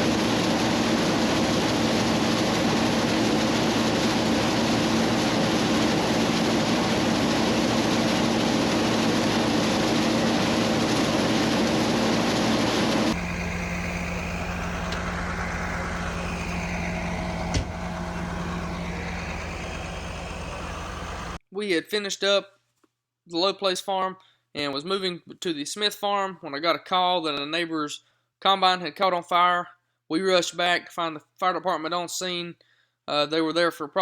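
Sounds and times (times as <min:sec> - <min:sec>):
farm machine engine droning: 0:00.0 - 0:21.4.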